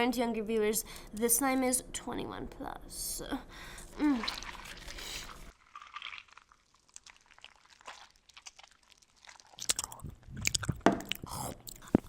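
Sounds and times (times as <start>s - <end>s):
slime being chewed: 4.0s - 12.0s.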